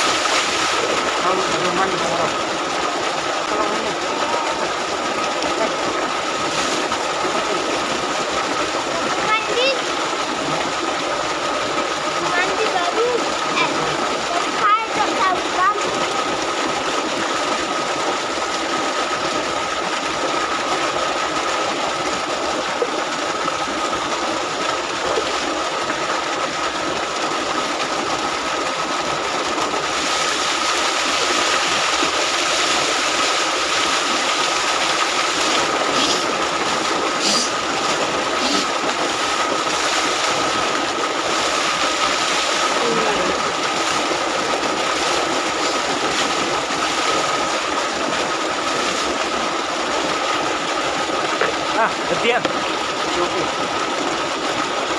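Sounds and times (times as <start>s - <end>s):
water pouring and splashing: 0.0s - 54.9s.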